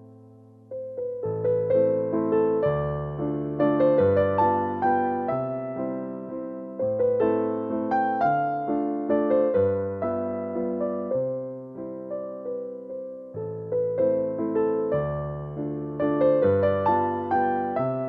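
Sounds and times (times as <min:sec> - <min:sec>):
gentle piano music: 0:00.0 - 0:18.0.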